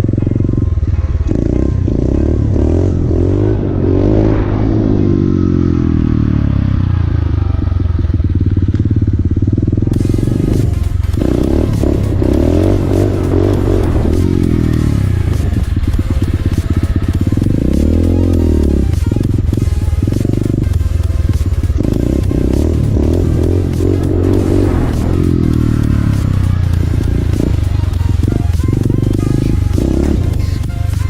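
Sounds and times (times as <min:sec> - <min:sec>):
motorcycle engine revving: 0:00.0 - 0:31.0
wind noise rushing: 0:03.0 - 0:07.1, 0:10.0 - 0:17.7, 0:22.9 - 0:28.3.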